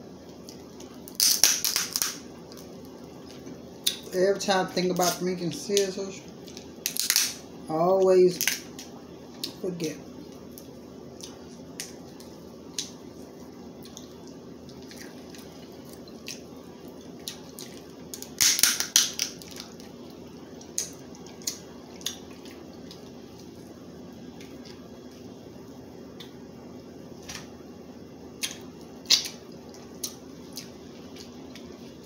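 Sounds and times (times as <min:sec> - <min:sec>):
crab shells cracking: 0:01.1 - 0:02.7, 0:06.5 - 0:07.4, 0:08.4 - 0:08.9, 0:17.2 - 0:20.0.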